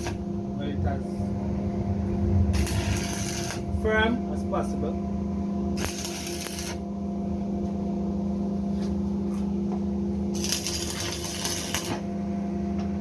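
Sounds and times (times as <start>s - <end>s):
welding arc hissing and crackling: 0.0s - 0.3s, 2.6s - 3.7s, 5.8s - 6.9s, 10.4s - 12.1s
steady low hum: 0.0s - 13.0s.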